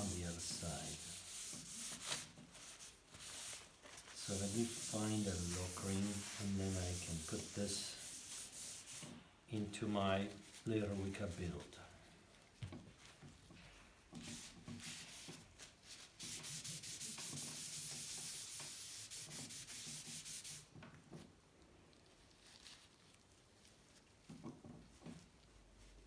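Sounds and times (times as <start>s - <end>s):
rapid rubbing strokes: 0.0s - 9.2s, 14.2s - 20.7s
faint handling noises: 0.0s - 16.1s, 20.7s - 26.0s.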